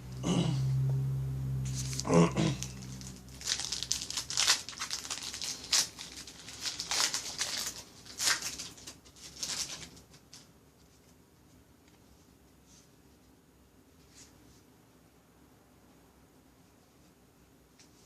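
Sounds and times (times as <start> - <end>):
card pack wrapper tearing: 1.7 - 10.5.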